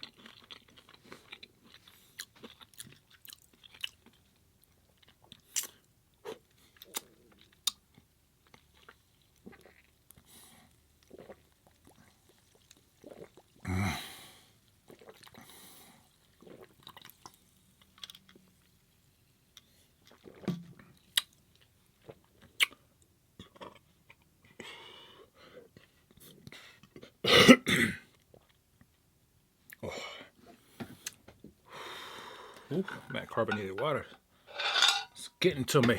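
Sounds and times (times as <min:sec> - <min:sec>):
chewing and mouth smacks: 0:00.0 - 0:10.3, 0:11.0 - 0:13.6, 0:16.2 - 0:18.7, 0:19.6 - 0:22.8.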